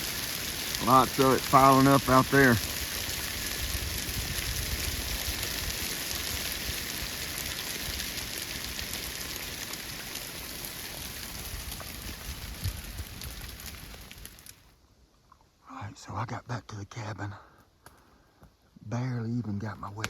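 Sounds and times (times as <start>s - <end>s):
hail striking ground: 0.0s - 14.7s.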